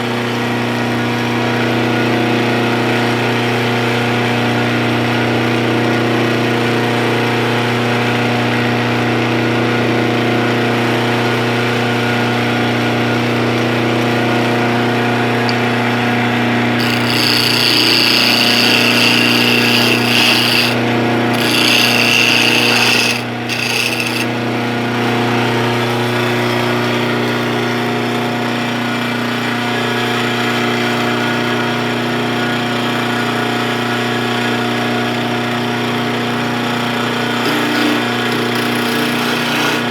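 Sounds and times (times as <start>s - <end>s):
lathe motor hum: 0.0s - 39.9s
tool scraping spinning wood: 11.3s - 28.6s, 36.7s - 39.9s.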